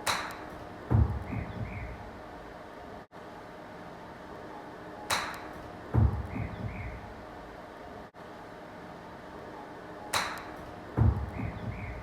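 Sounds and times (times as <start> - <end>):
golf club striking ball: 0.0 - 0.4, 5.1 - 5.6, 10.1 - 10.6
low thumps: 0.9 - 1.9, 5.9 - 7.0, 11.0 - 11.9.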